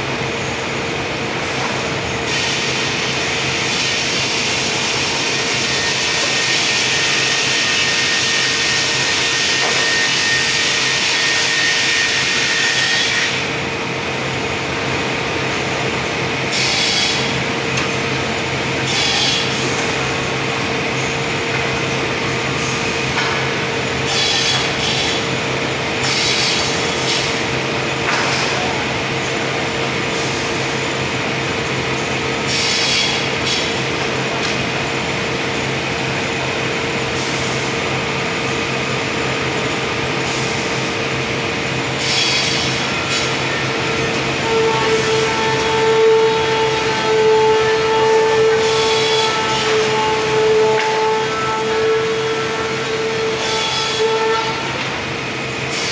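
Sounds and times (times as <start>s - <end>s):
sawmill machinery humming: 0.0s - 55.9s
saw cutting wood: 2.3s - 13.6s, 16.5s - 20.3s, 22.6s - 25.4s, 26.0s - 28.9s, 32.5s - 34.0s, 41.9s - 55.9s.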